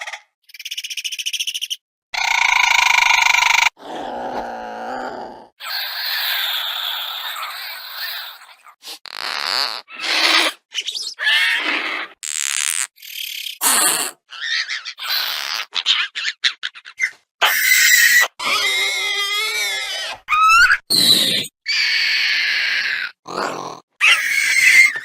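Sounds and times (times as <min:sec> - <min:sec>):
creature chirps squeals and hisses: 0:05.6 - 0:16.3, 0:17.0 - 0:23.4, 0:24.0 - 0:25.0.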